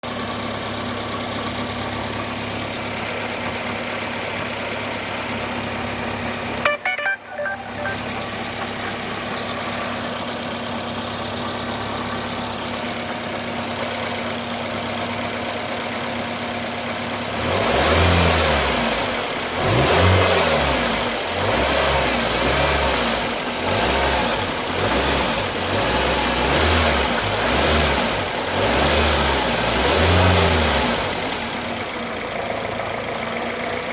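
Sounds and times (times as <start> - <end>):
car engine idling and revving: 0.0 - 6.7, 7.6 - 33.9.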